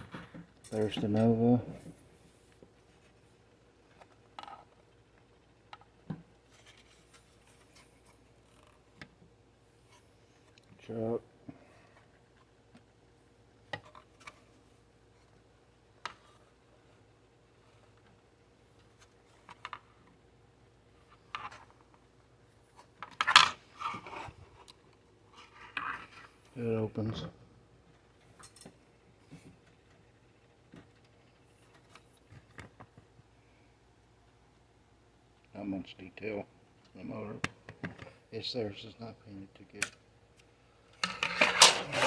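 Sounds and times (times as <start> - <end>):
toy cars and packaging handled: 6.5 - 9.0, 41.0 - 42.0
clicks and scrapes of small parts: 22.8 - 26.6, 40.9 - 42.0.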